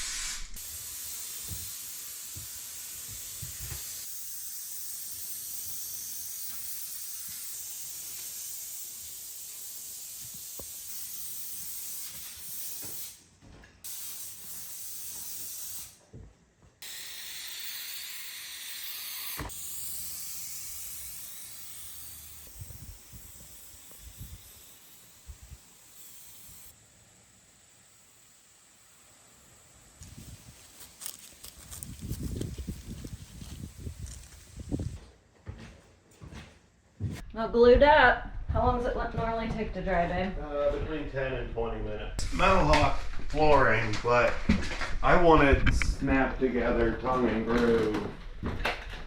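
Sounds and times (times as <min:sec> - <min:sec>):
spray adhesive hissing from nozzle: 0:00.0 - 0:13.2, 0:13.9 - 0:16.0, 0:16.8 - 0:34.9.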